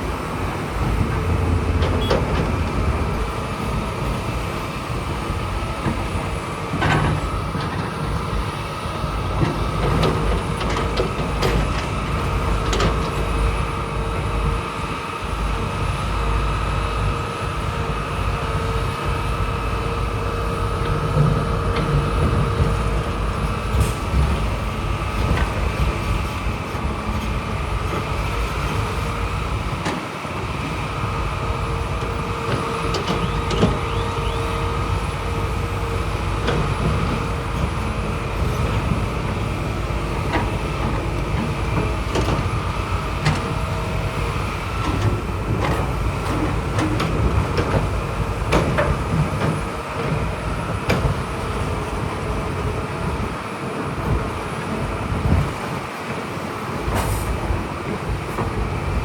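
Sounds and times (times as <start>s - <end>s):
bulldozer diesel engine: 0.0s - 59.0s
metallic clanks and squeaks: 33.0s - 34.4s.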